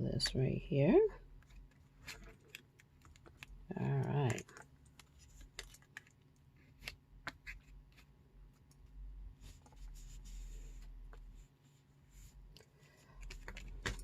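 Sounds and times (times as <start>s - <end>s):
soft rubbing on card: 9.3s - 13.6s.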